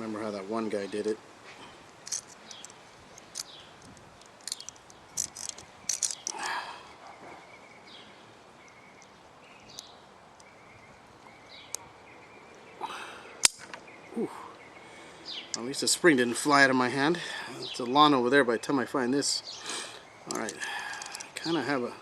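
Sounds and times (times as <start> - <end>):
faint outdoor background: 0.0 - 22.0
small parts clicking and scraping: 1.9 - 6.6, 20.3 - 21.6.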